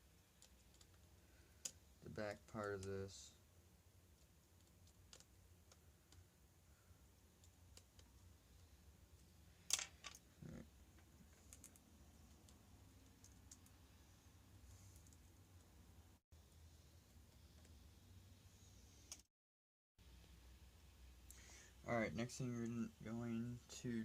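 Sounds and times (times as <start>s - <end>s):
faint low hum: 20.0s - 24.0s.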